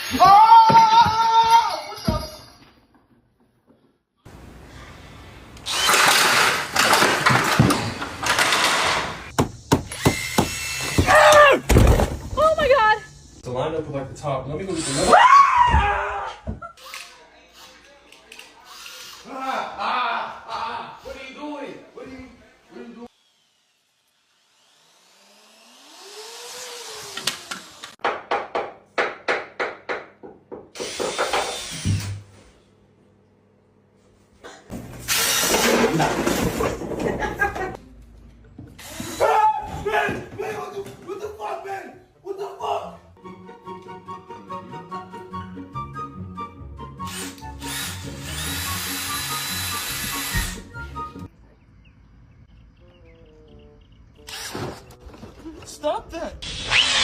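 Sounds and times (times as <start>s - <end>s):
electric drill running: 5.6s - 9.0s, 9.9s - 11.1s, 18.7s - 19.3s, 23.1s - 28.0s, 30.8s - 32.2s, 35.1s - 35.6s, 47.0s - 50.8s, 54.3s - 54.5s, 56.4s - 57.0s.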